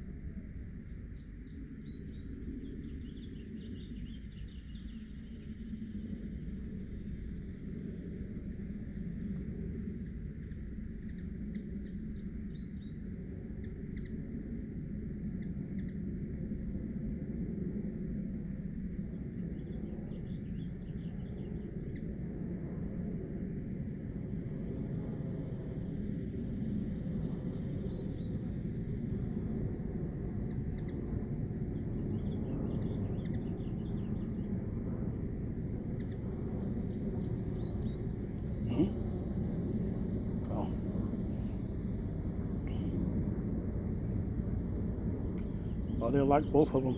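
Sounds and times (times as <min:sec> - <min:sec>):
insects trilling: 0:00.0 - 0:46.9
low steady rumble: 0:21.3 - 0:46.9.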